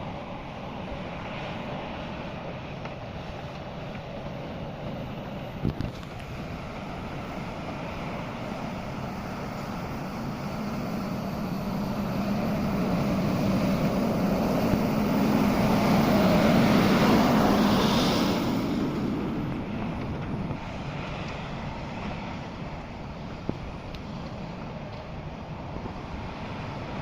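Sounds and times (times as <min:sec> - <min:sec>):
heavy vehicle engine running: 0:00.0 - 0:27.0.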